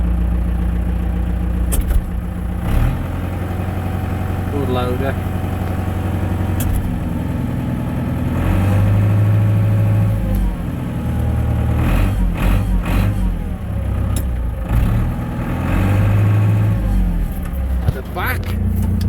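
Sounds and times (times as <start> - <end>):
tractor diesel engine revving: 0.0 - 19.0.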